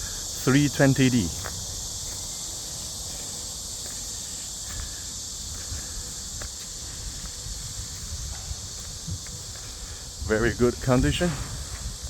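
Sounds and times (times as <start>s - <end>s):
insects chirping: 0.0s - 12.0s.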